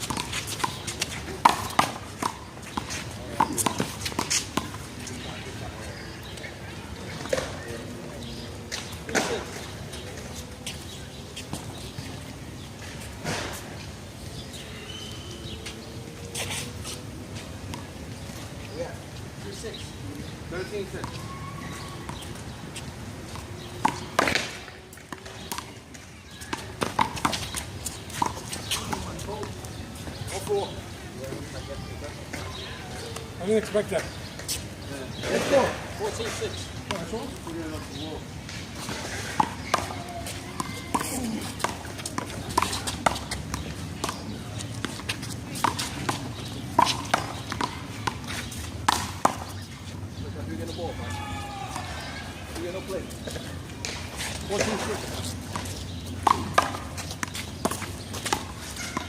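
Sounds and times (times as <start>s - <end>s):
rubber ball slapping wall and pavement: 0.0s - 4.8s, 23.4s - 29.6s, 39.0s - 49.6s.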